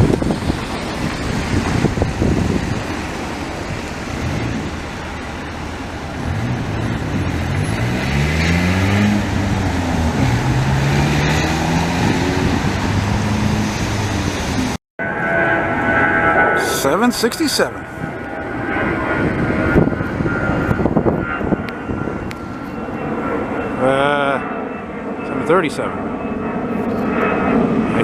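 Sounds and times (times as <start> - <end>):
engine passing with changing pitch: 0.0 - 28.0
road traffic noise: 0.0 - 28.0.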